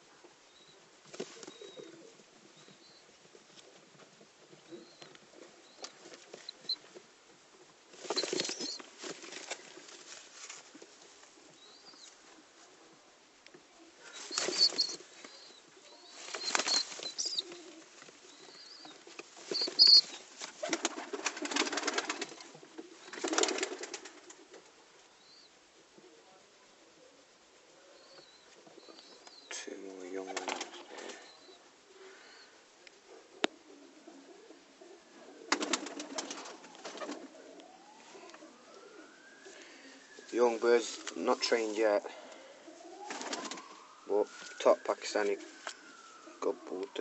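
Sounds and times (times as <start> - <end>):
pigeons flapping wings: 8.0 - 10.0, 14.2 - 15.4, 16.2 - 17.8, 19.2 - 24.4, 30.2 - 31.2, 35.5 - 37.4, 43.0 - 43.8
faint high chirps: 14.0 - 20.3.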